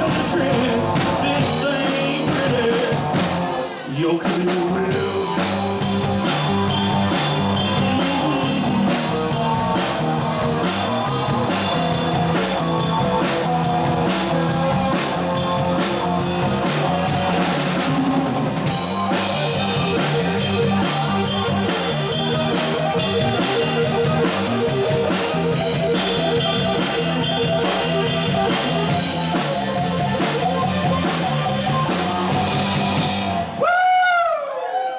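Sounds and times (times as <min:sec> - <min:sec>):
drum kit beat: 0:00.0 - 0:33.7
rock band playing: 0:00.0 - 0:33.9.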